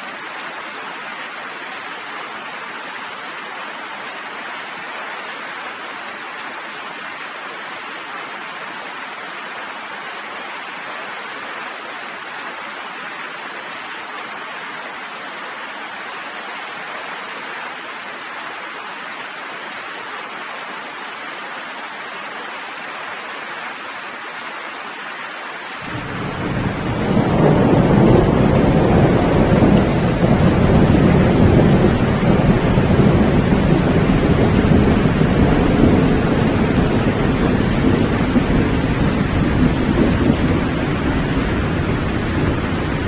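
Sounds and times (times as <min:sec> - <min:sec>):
steady rain falling: 0:00.0 - 0:43.0
deep rumble of thunder: 0:25.9 - 0:43.0.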